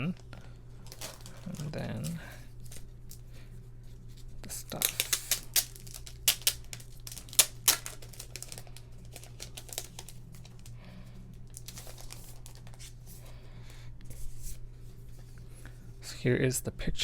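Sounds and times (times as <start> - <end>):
packaging rustling: 0.0 - 3.3, 4.0 - 13.3
steady low hum: 0.0 - 17.0.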